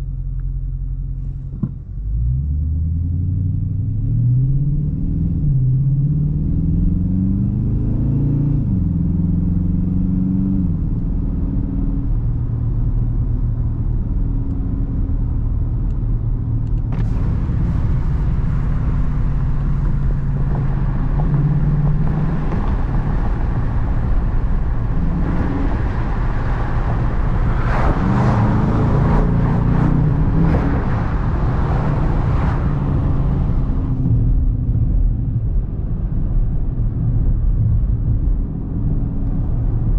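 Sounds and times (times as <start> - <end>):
car engine accelerating: 0.0 - 39.9
rushing noise: 16.9 - 35.2.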